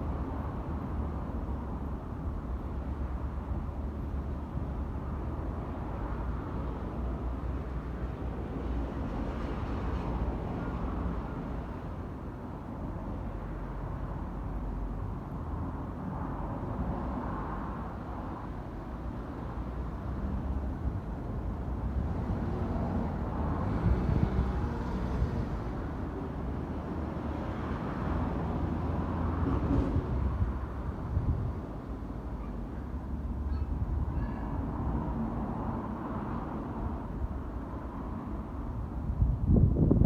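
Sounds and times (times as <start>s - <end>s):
low rumble of vehicles: 0.0s - 40.0s.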